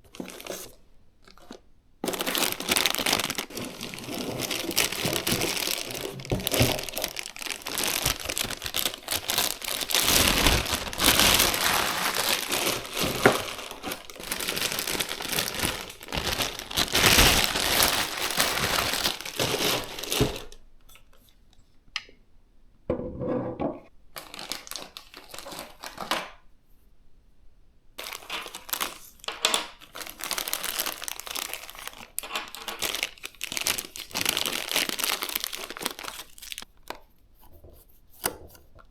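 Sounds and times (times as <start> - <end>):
packaging crinkling and rustling: 0.0 - 21.2, 24.2 - 26.4, 28.0 - 37.1
packaging tearing: 0.1 - 20.6, 28.0 - 36.7.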